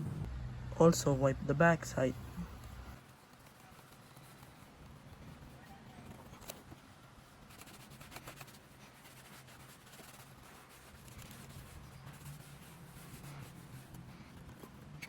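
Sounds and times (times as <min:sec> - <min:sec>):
low steady hum: 0:00.0 - 0:03.2
cloth wiping laptop casing: 0:01.8 - 0:15.0.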